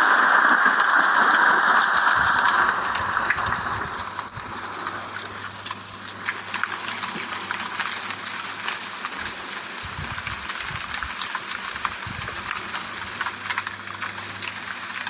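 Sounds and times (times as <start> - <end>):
rain hiss: 0.0 - 15.0
rain ticking on hard surface: 0.0 - 15.0.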